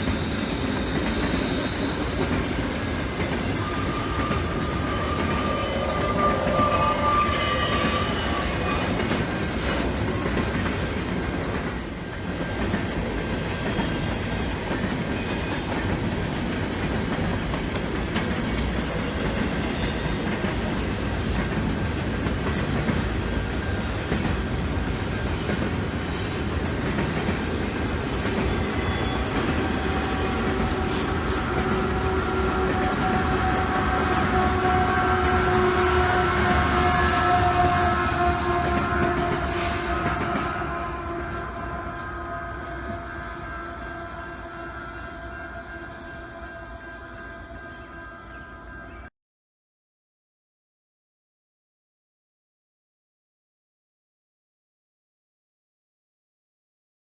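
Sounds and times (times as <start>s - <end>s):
high wheel squeal: 0.0s - 10.0s, 28.4s - 34.2s, 35.8s - 40.5s
train cars clattering: 0.0s - 40.8s
train rumbling past: 0.0s - 49.0s.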